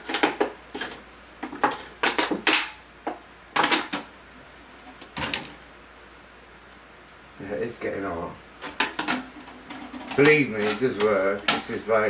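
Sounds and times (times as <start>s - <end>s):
hard objects clattering on work surface: 0.0s - 4.1s, 8.6s - 11.8s.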